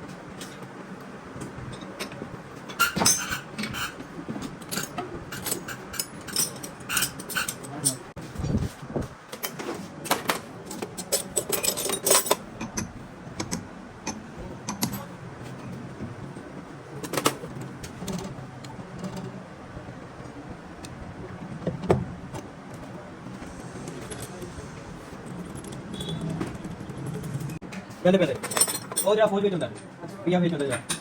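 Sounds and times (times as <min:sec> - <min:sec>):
metal parts clinking: 0:02.7 - 0:04.0, 0:04.6 - 0:08.1, 0:10.7 - 0:12.8, 0:28.3 - 0:29.3.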